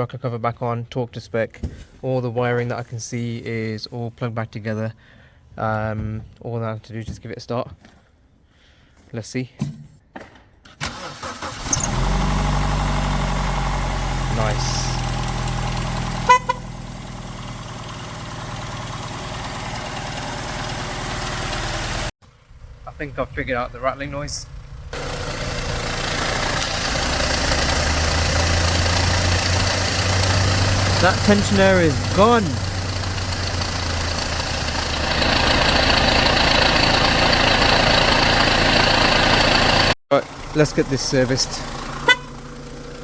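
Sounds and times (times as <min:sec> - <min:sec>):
car engine idling: 0:10.9 - 0:43.0.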